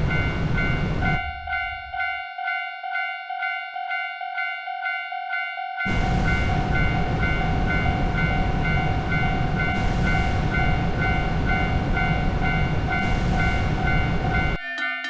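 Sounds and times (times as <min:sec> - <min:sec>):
train rumbling past: 0:00.0 - 0:02.6, 0:05.8 - 0:14.6
crossing warning bell ringing: 0:00.0 - 0:15.0.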